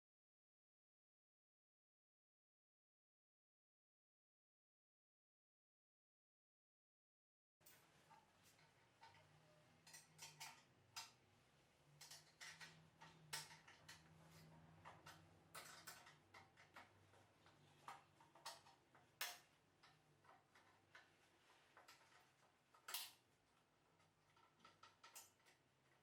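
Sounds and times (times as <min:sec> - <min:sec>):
light metallic clicks and taps: 0:12.0 - 0:21.1.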